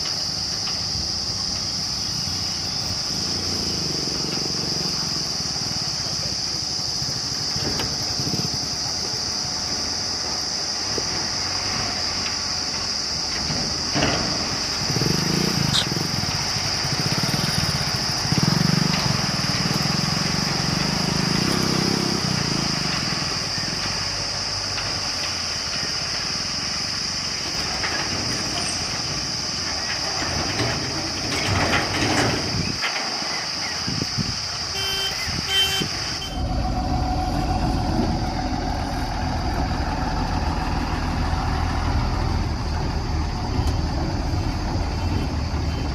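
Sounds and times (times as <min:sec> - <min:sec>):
diesel machinery engine: 0:00.0 - 0:45.9
high-pitched whine: 0:35.0 - 0:41.1.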